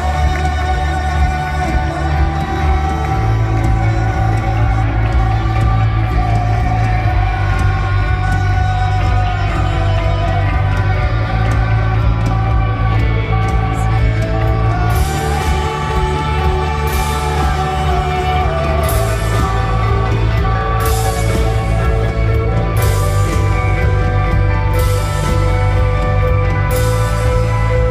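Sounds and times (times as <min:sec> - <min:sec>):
rock band playing live: 0:00.0 - 0:27.9.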